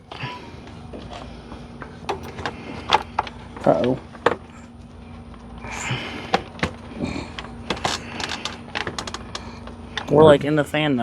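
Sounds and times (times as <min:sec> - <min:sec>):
plastic clicks and knocks: 0:02.1 - 0:03.1.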